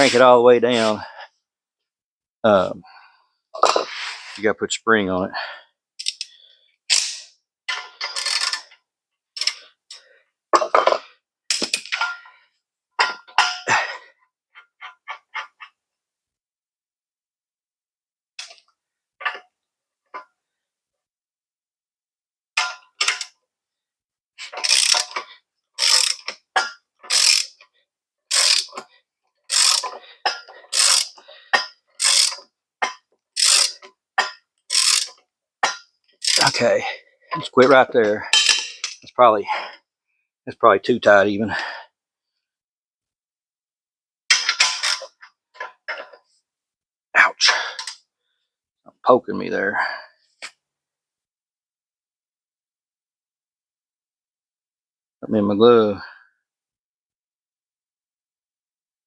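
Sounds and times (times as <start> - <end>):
metal hardware clinking and scraping: 6.9 - 8.8, 10.6 - 12.4, 13.0 - 14.0, 28.3 - 39.7, 44.3 - 46.2
ratchet wrench rasping: 8.0 - 8.7, 9.4 - 9.6, 24.4 - 26.4, 27.0 - 27.6, 28.3 - 28.8, 29.5 - 36.6.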